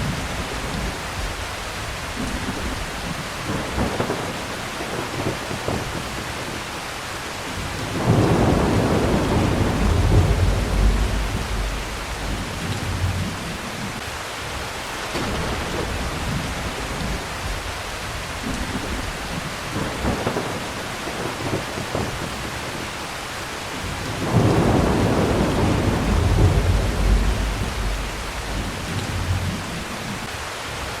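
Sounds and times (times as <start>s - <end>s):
thunder rumbling: 0.0s - 6.7s, 7.5s - 14.0s, 15.1s - 22.9s, 23.8s - 30.3s
heavy rain: 0.0s - 31.0s.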